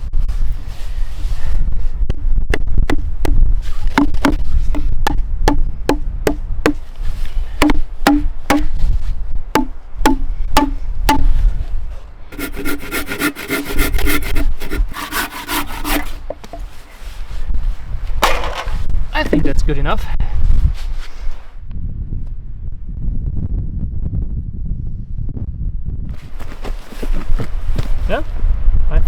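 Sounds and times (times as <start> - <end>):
axe striking wood: 2.6 - 6.8, 7.6 - 8.8, 9.6 - 11.4, 12.4 - 16.7
rasping strokes on wood: 9.6 - 11.2, 12.3 - 16.7.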